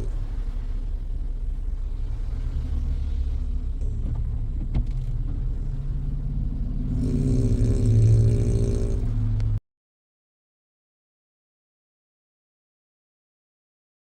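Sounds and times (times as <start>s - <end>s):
dog snoring: 6.9s - 9.2s.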